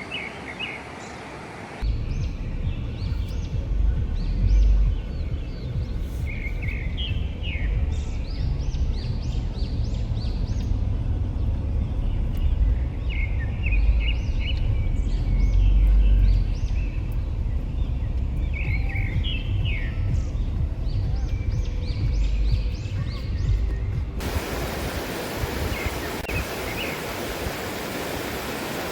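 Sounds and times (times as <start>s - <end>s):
birds chirping: 0.0s - 28.9s
steady low rumble: 1.8s - 28.9s.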